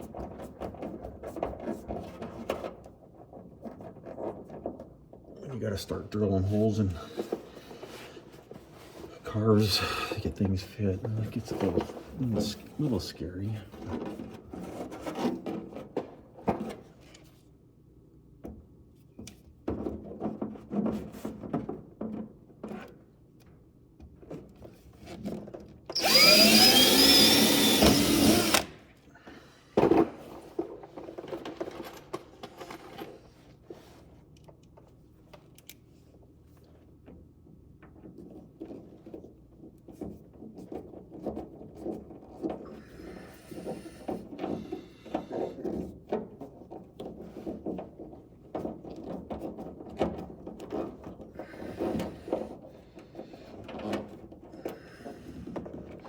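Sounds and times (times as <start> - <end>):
power drill drilling: 25.9 - 28.8
knocks and rattles of parts: 29.8 - 33.7.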